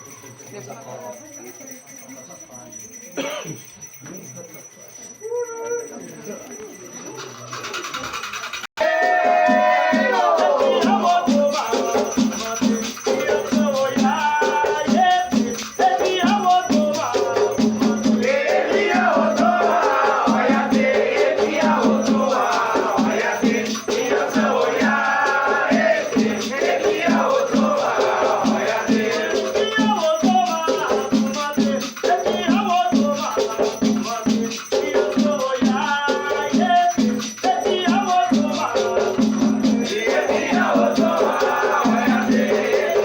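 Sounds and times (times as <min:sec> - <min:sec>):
shaken rattle rhythm: 0:00.0 - 0:43.0
chanted singing: 0:08.8 - 0:43.0.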